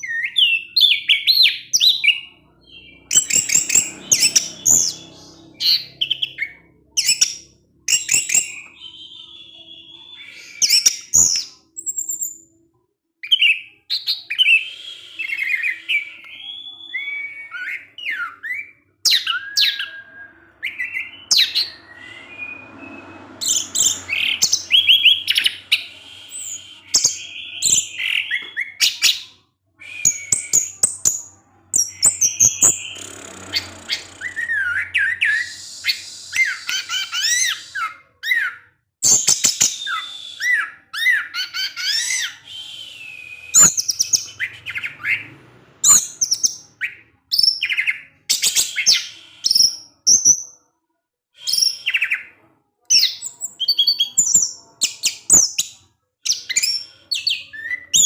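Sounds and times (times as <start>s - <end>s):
thrush singing: 1.9s - 10.7s, 14.4s - 29.0s.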